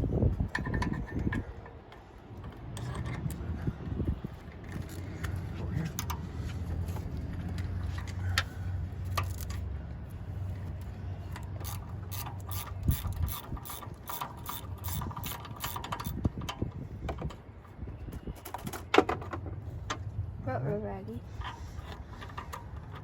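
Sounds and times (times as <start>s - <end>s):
socket ratchet clicking: 11.4s - 16.2s.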